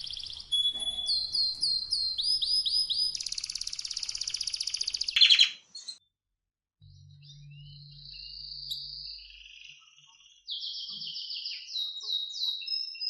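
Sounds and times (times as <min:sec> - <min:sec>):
low hum: 0:00.0 - 0:04.5, 0:06.8 - 0:09.5
canary singing: 0:00.0 - 0:06.0, 0:06.8 - 0:13.0.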